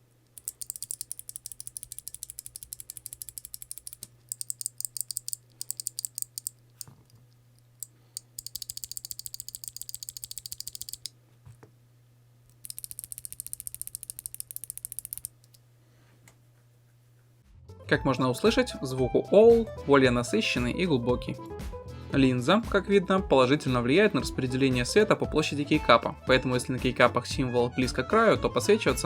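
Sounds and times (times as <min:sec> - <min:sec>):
mechanical keyboard clicking: 0:00.3 - 0:07.0, 0:08.2 - 0:11.1, 0:12.5 - 0:15.6.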